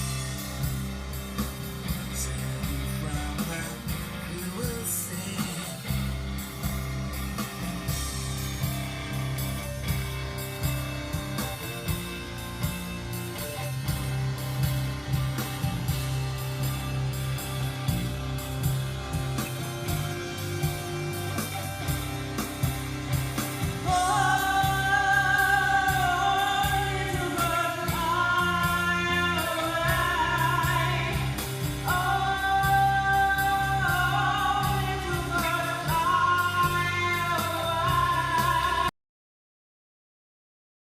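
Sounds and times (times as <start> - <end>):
rock band track: 0.0 - 38.9
person singing wordless notes: 2.0 - 6.3, 23.5 - 38.9.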